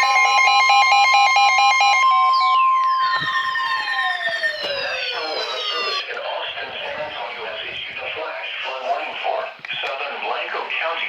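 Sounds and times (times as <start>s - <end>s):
fast-pulsing beeping alarm: 0.0s - 6.1s
tones gliding downward: 2.1s - 6.1s.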